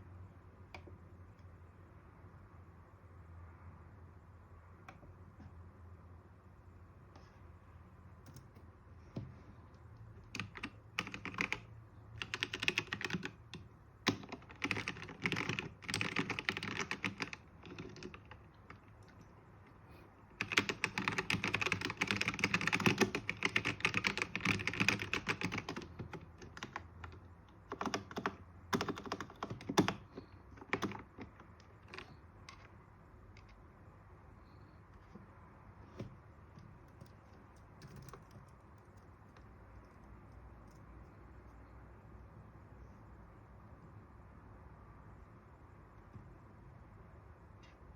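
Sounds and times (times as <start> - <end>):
mechanical keyboard typing: 8.2 - 8.7, 10.2 - 19.2, 20.4 - 32.7, 35.9 - 40.0.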